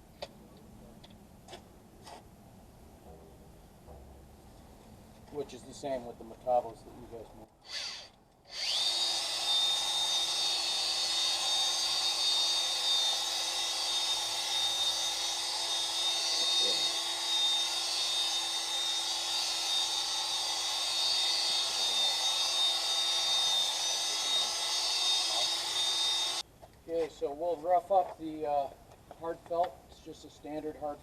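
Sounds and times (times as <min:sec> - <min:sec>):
electric polisher whining: 0:07.7 - 0:26.4.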